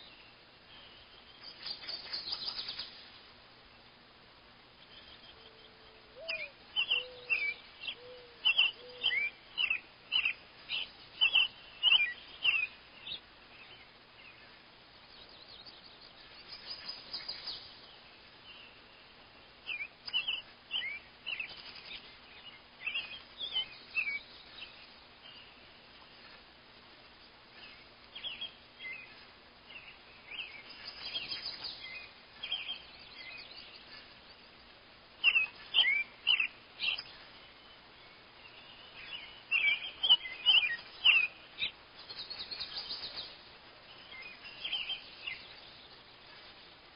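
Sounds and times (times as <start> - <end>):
birds chirping: 4.6 - 46.9.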